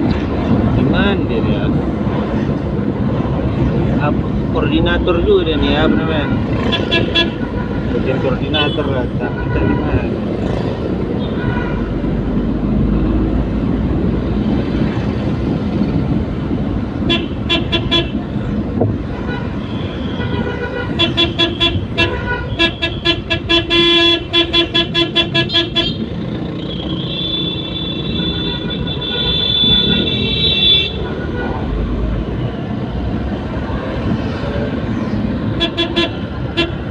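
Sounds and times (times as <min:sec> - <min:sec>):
engine and road noise: 0:00.0 - 0:36.9
vehicle horn tooting: 0:19.2 - 0:26.1, 0:26.7 - 0:31.6.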